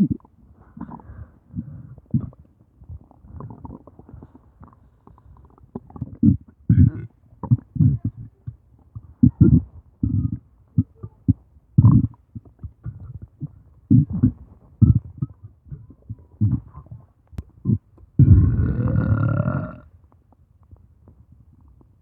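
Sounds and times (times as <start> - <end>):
stomach growling: 0.0 - 20.1
loud drawn-out burp: 18.2 - 19.9.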